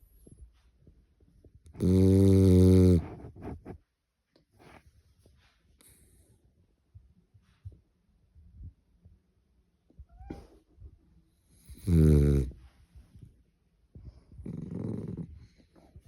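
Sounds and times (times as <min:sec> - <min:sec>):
dog snoring: 0:01.7 - 0:03.4, 0:11.6 - 0:12.6, 0:14.4 - 0:15.6.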